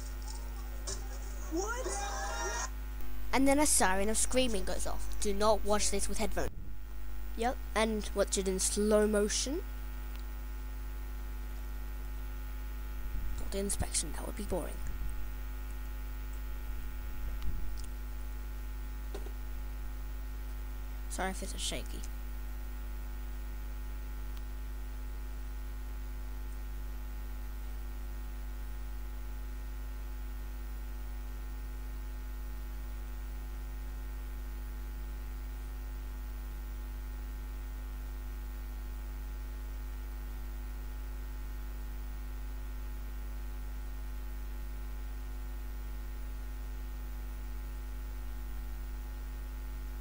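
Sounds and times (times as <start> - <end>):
low electrical hum: 0.0 - 50.0.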